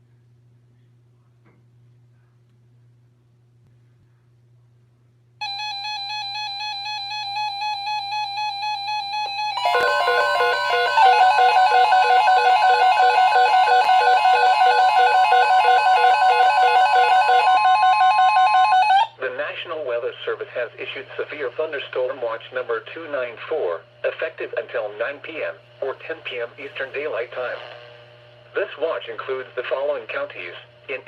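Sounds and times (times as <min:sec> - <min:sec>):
steady warning alarm tone: 0:05.4 - 0:19.1
pulsing tones: 0:09.5 - 0:18.2
music-like electronic tone: 0:09.6 - 0:17.5.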